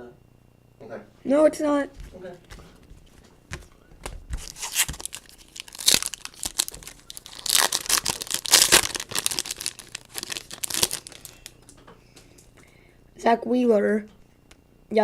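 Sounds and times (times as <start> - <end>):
wrapper tearing and crinkling: 4.4 - 11.6.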